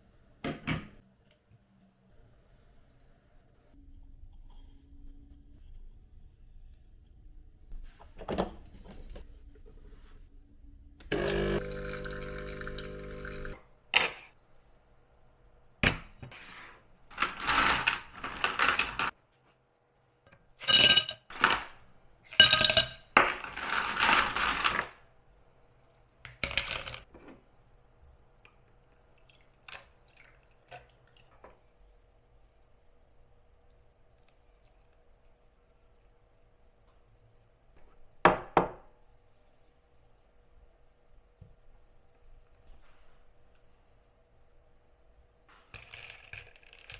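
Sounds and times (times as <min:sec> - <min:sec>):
machine humming: 0:11.1 - 0:13.6
glass and ice clinking: 0:11.2 - 0:13.6
liquid pouring into glass: 0:11.2 - 0:13.6.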